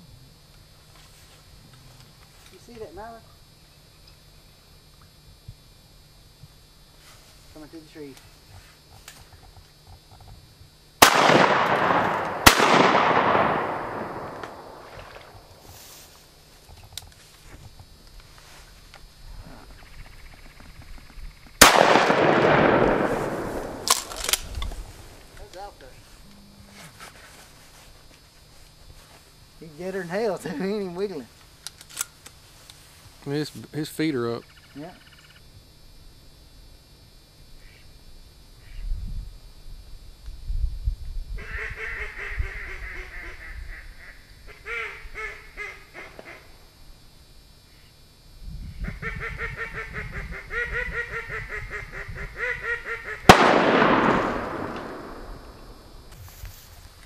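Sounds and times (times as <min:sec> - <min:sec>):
shotgun shot: 0:11.0 - 0:15.4, 0:21.6 - 0:24.6, 0:53.3 - 0:55.9
sharp cracks: 0:11.0 - 0:15.8, 0:21.6 - 0:25.7, 0:53.3 - 0:56.2
wind noise on microphone: 0:22.6 - 0:25.3, 0:38.6 - 0:44.0, 0:48.3 - 0:52.9.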